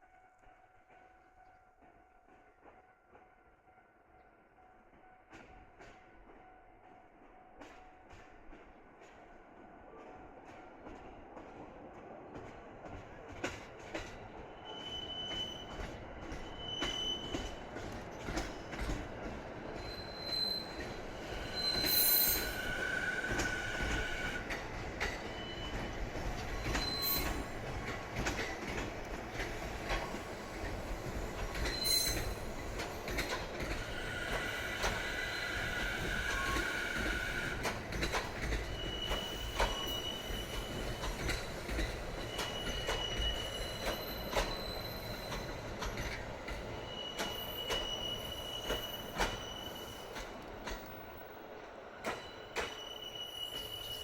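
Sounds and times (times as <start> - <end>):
train rumble: 4.7 - 54.0
train wheels squealing: 14.0 - 54.0
wheels clicking over rail joints: 37.6 - 39.9.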